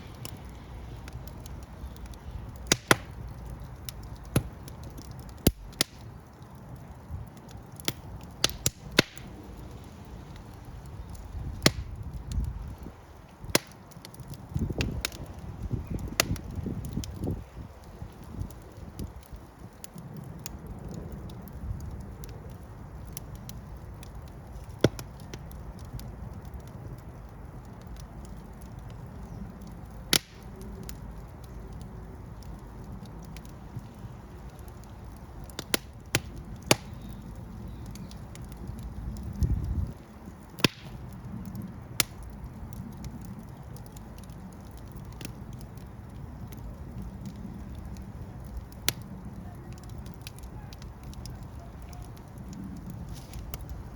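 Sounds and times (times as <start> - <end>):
fire crackling and popping: 0.0 - 53.9
fire rumbling: 0.0 - 53.9.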